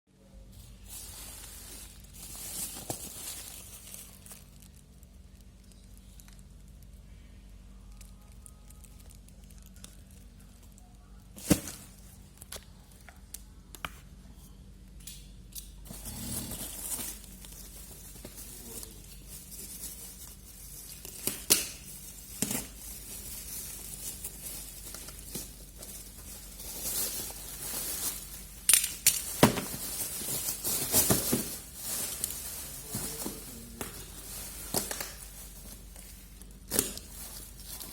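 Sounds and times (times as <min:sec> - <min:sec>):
packaging rustling and tearing: 0:00.6 - 0:06.8, 0:15.9 - 0:37.9.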